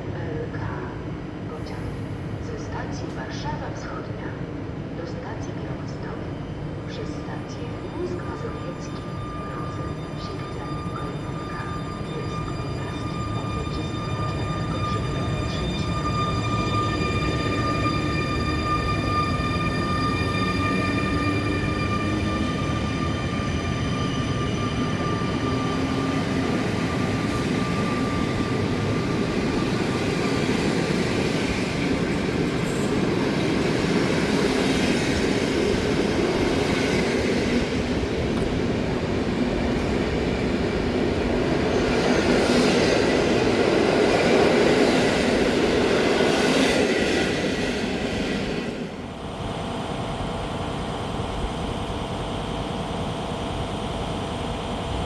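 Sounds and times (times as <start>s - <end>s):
train wheels on rails: 10.4s - 49.1s.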